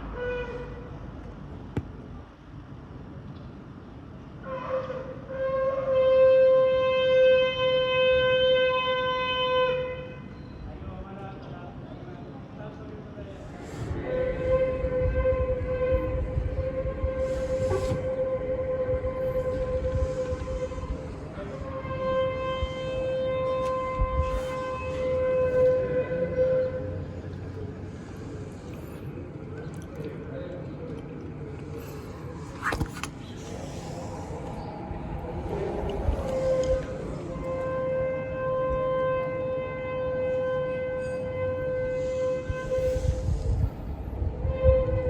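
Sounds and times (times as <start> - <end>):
shofar long blast: 0.0 - 0.9, 4.4 - 10.3, 13.4 - 27.3, 31.8 - 45.0.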